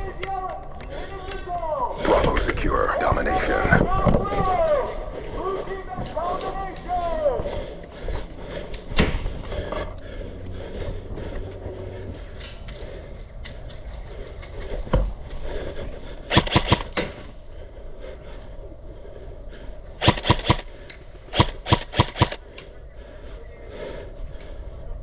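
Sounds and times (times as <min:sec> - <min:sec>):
outdoor rumble: 0:02.0 - 0:25.0
airsoft guns firing: 0:16.3 - 0:17.1, 0:20.0 - 0:20.6, 0:21.3 - 0:22.4.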